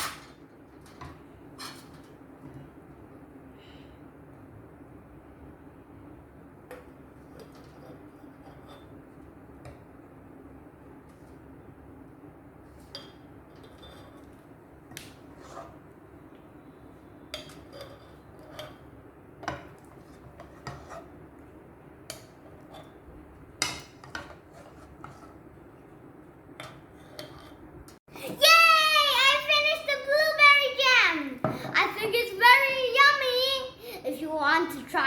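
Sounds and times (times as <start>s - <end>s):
faint steady hum: 0.0s - 35.0s
spoon clinking and scraping on pot: 17.4s - 18.9s.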